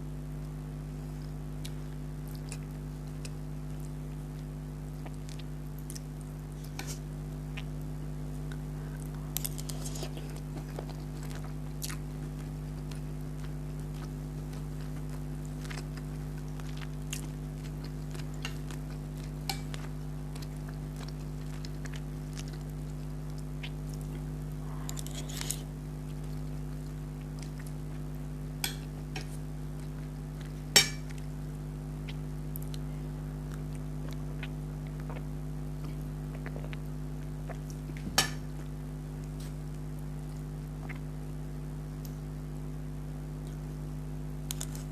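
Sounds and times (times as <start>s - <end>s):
steady low hum: 0.0s - 44.9s
chewing: 8.4s - 31.3s, 32.1s - 39.6s, 40.3s - 41.1s, 44.5s - 44.9s.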